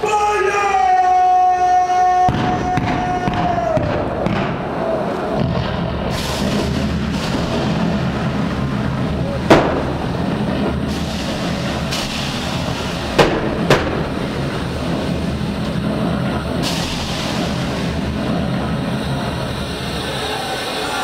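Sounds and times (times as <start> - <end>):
cannon bangs: 2.3 - 8.1, 9.4 - 10.7, 13.1 - 15.0
background rumble: 2.3 - 21.0.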